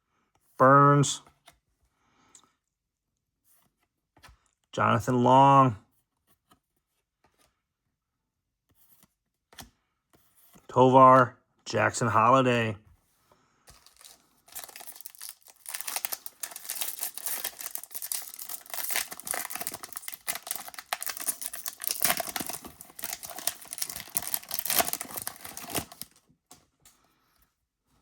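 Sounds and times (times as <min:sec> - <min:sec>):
foil wrapper crinkling and tearing: 0:13.7 - 0:26.2.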